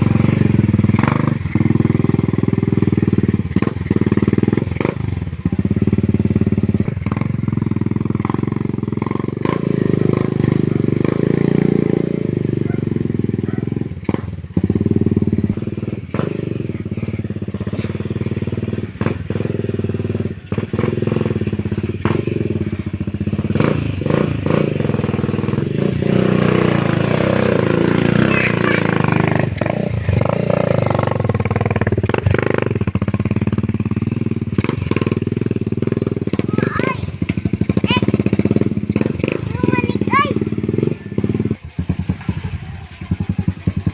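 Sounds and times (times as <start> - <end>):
motorcycle engine running: 0.0 - 43.9.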